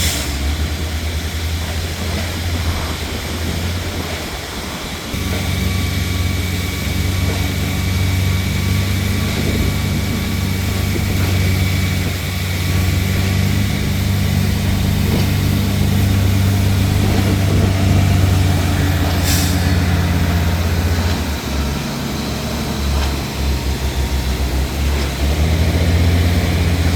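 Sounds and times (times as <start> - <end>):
sharp hiss of air: 0.0 - 0.6, 18.0 - 20.6
diesel truck engine running: 0.0 - 26.9.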